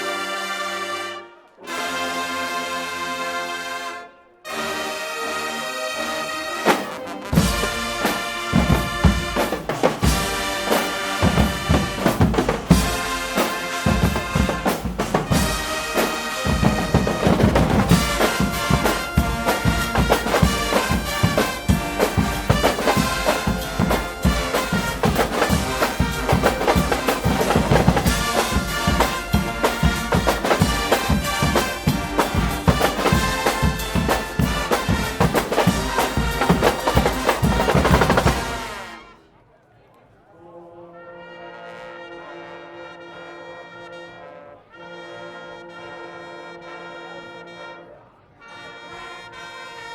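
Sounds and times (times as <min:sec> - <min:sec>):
brass band playing: 0:00.0 - 0:39.4, 0:40.4 - 0:49.9
bass drum and snare drums: 0:06.7 - 0:38.9.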